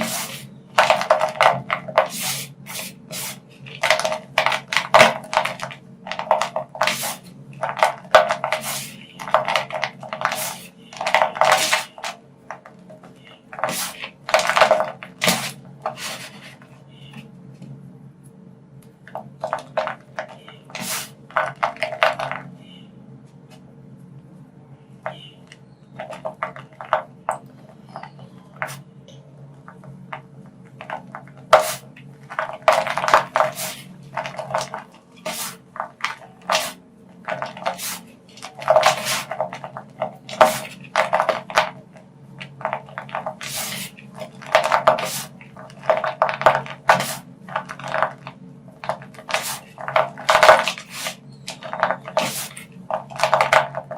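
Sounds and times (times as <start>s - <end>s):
chalk crunching by hand: 0.0s - 12.2s, 13.6s - 17.2s, 20.7s - 22.1s, 30.8s - 41.7s, 42.4s - 48.2s, 48.8s - 53.9s.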